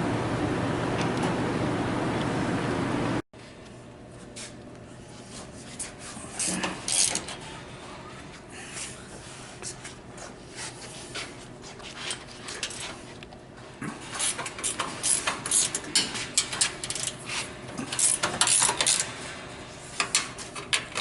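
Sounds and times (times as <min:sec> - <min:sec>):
metal hardware clicking and rattling: 0:14.4 - 0:17.2.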